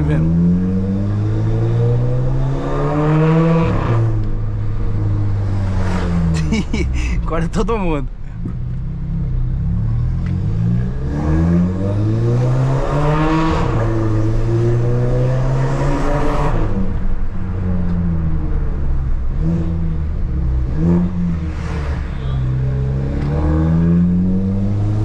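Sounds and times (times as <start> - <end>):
car engine accelerating hard: 0.0 - 7.2, 9.0 - 25.0.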